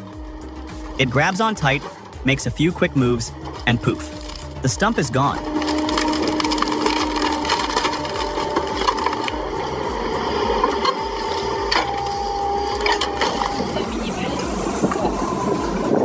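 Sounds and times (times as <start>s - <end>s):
hydraulic machinery whining: 0.0s - 16.0s
wood cracking: 1.8s - 13.7s.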